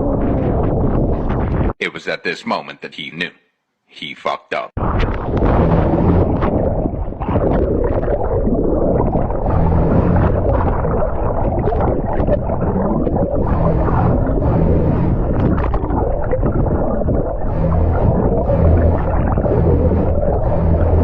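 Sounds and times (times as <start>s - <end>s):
wind noise: 0.0s - 1.8s, 4.8s - 21.0s
jet ski engine drone: 5.4s - 6.4s, 9.4s - 10.8s, 13.4s - 15.9s, 17.4s - 21.0s.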